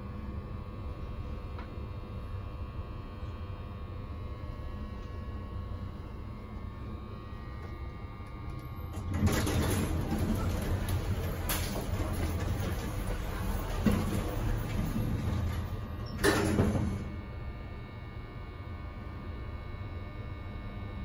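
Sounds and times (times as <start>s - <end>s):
elevator machinery humming: 4.2s - 19.6s.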